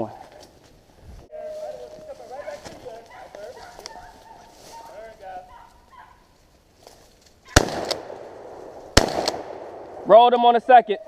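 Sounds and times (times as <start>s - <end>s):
dogs baying: 2.3s - 6.3s
shotgun shots with echo: 7.5s - 10.0s.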